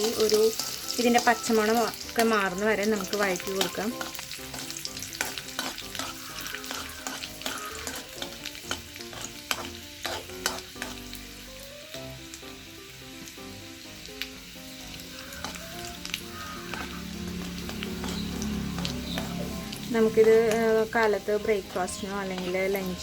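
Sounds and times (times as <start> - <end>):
food sizzling in hot oil: 0.0 - 23.0
spatula clicking against pan: 3.5 - 11.0.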